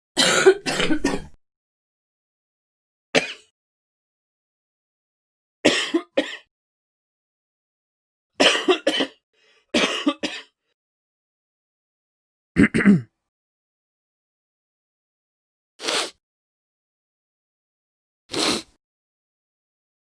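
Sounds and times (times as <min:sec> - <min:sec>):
person coughing: 0:00.2 - 0:01.4, 0:03.2 - 0:03.5, 0:05.7 - 0:06.5, 0:08.4 - 0:09.2, 0:09.8 - 0:10.6, 0:12.6 - 0:13.1.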